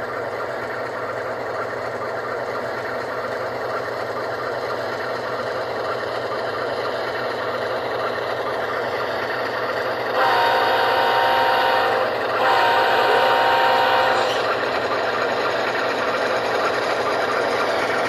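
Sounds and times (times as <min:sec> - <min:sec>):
diesel engine drone from small speakers: 0:00.0 - 0:18.0
multi-chime train horn: 0:10.2 - 0:14.5.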